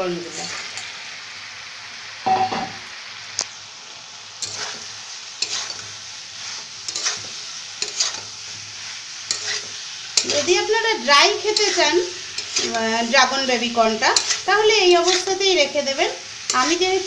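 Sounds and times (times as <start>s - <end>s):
frying hiss in a pan: 0.0s - 17.0s
utensil scraping a pan: 0.2s - 0.9s, 4.4s - 17.0s.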